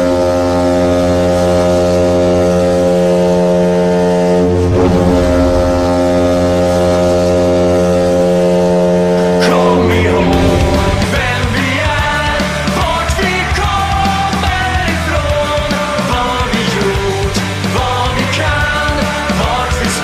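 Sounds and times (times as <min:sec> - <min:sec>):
goal horn blast: 0:03.1 - 0:11.8
rock song: 0:09.4 - 0:20.0.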